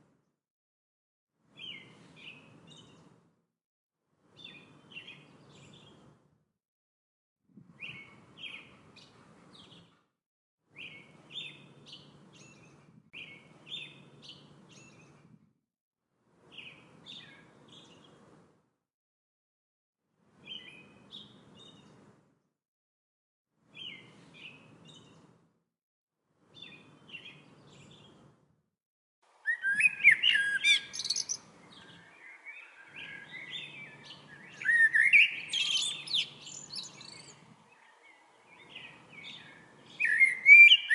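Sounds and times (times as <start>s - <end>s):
songbirds chirping: 1.5s - 3.2s, 4.3s - 6.2s, 7.8s - 10.0s, 10.7s - 15.4s, 16.4s - 18.4s, 20.3s - 22.1s, 23.7s - 25.4s, 26.4s - 28.4s, 29.3s - 40.9s.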